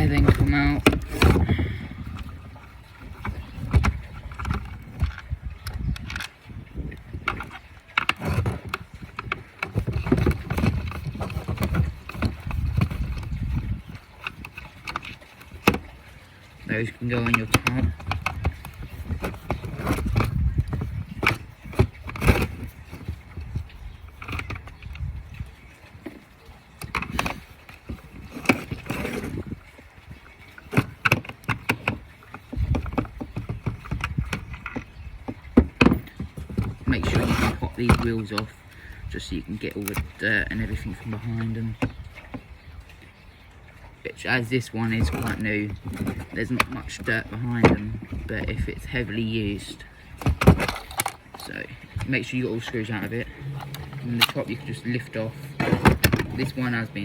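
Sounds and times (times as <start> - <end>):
plastic part knocking: 0.0 - 2.4, 3.1 - 6.3, 7.3 - 15.9, 17.2 - 23.6, 30.7 - 38.4, 44.9 - 48.7, 50.2 - 52.1, 53.1 - 57.0
low handling rumble: 44.5 - 57.0.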